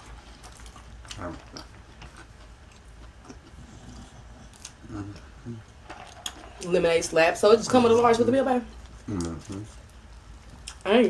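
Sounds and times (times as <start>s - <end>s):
person chewing food: 0.0s - 6.6s, 8.7s - 10.9s.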